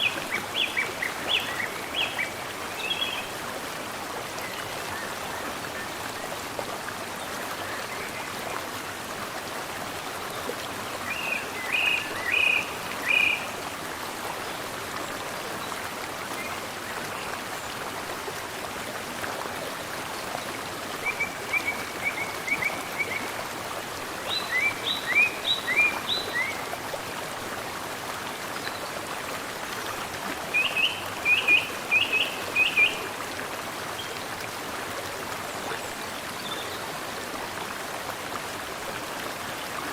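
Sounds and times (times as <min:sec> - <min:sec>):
mountain stream flowing: 0:00.0 - 0:39.9
songbirds singing: 0:24.3 - 0:26.6, 0:30.5 - 0:33.0.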